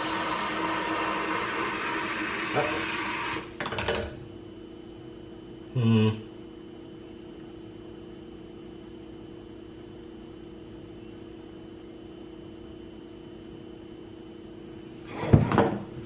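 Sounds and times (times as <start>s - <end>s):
faint high whine: 9.8s - 14.6s.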